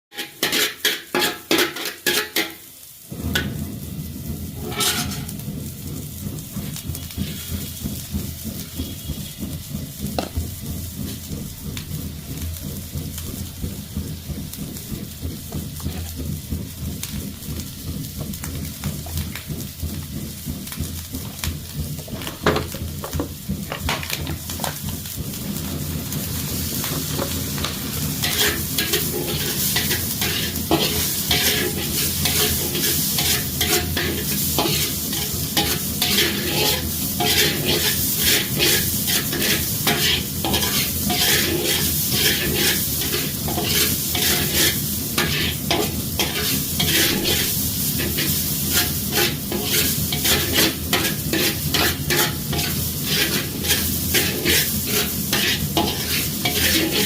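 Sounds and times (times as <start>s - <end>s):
metal spatula scraping pan: 0.1s - 2.6s, 4.6s - 5.4s, 28.1s - 57.0s
rice sizzling in a wok: 0.1s - 57.0s.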